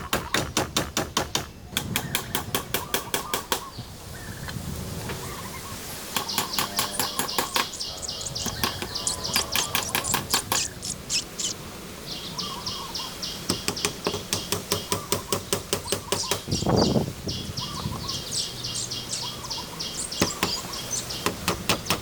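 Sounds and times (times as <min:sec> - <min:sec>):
birds chirping: 0:01.4 - 0:22.0
hand tool tapping on wood: 0:06.2 - 0:07.8, 0:13.5 - 0:16.5.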